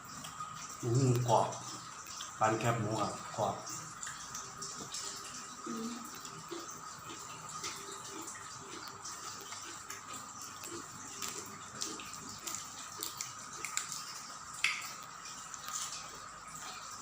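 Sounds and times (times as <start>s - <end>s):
chewing clicks and smacks: 7.6s - 16.8s.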